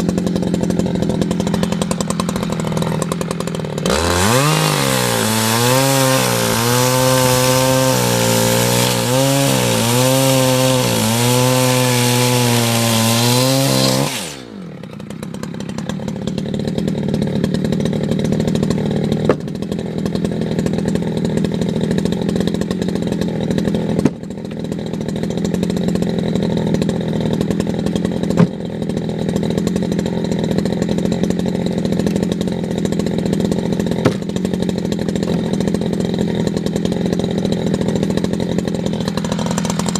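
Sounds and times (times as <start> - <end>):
chainsaw running: 0.0 - 39.9
sharp knocks: 19.2 - 19.5, 34.0 - 34.3.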